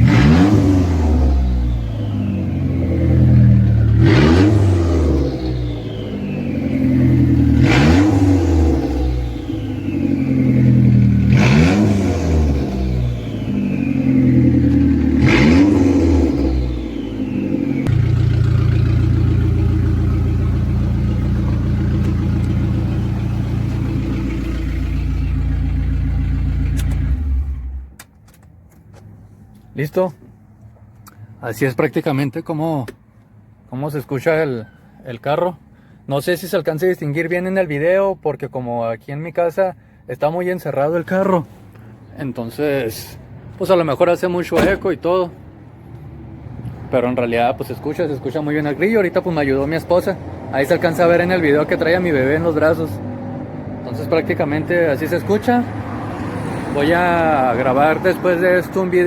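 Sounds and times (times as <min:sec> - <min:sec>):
car engine revving: 0:00.0 - 0:28.0, 0:43.2 - 0:59.0
car engine idling: 0:00.0 - 0:31.4, 0:41.1 - 0:59.0.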